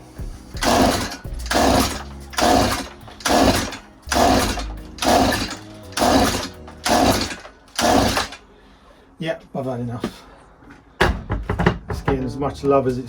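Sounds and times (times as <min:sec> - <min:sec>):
chainsaw recoil starter pulls: 0:00.6 - 0:08.4
engine turning over: 0:00.6 - 0:08.4.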